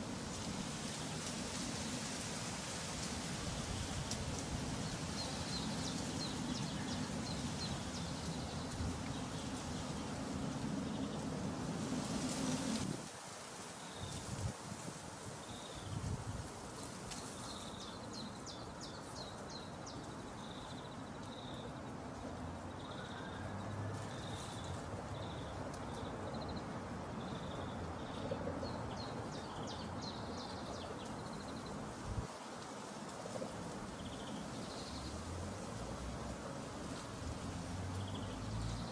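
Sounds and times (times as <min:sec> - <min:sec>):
steady hiss: 0:00.0 - 0:21.2.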